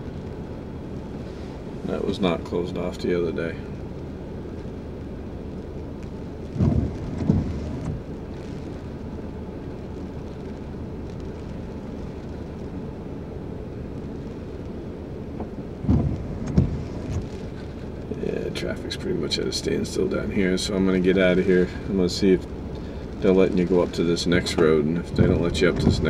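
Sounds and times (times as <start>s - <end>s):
car cabin rumble: 0.0s - 26.0s
dull low thumps: 5.1s - 8.6s, 15.3s - 18.2s, 19.8s - 26.0s.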